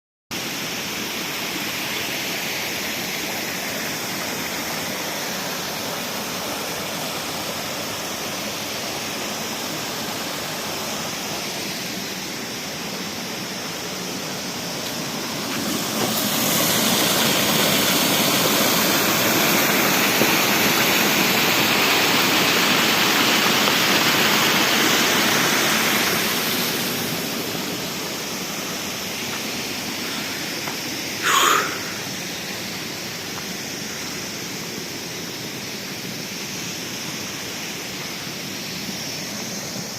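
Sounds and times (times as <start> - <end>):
rushing stream water: 0.3 - 39.9.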